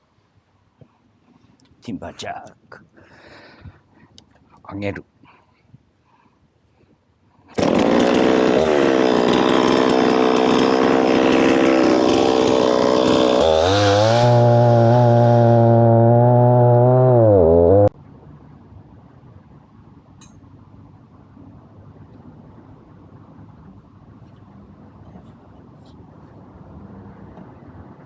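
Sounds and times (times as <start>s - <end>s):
chainsaw running at full throttle: 7.6s - 17.9s.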